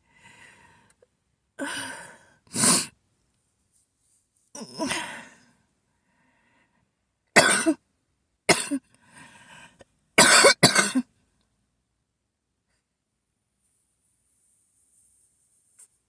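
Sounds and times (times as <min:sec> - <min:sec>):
person coughing harshly: 0:07.4 - 0:07.8, 0:08.5 - 0:08.8, 0:10.2 - 0:11.1
person breathing: 0:09.0 - 0:09.8.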